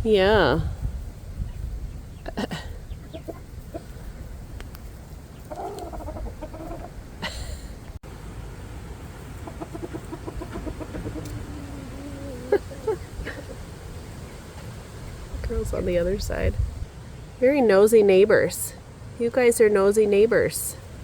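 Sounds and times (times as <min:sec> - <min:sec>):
chickens clucking: 0:02.2 - 0:04.2, 0:05.4 - 0:07.1, 0:09.2 - 0:14.8.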